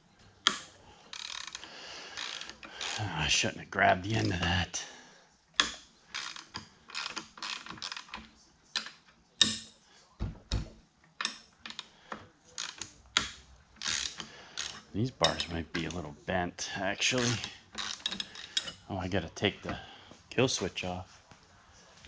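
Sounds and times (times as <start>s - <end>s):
ratchet wrench clicking: 0.4s - 3.1s, 5.6s - 8.2s, 12.6s - 16.0s, 17.2s - 18.8s.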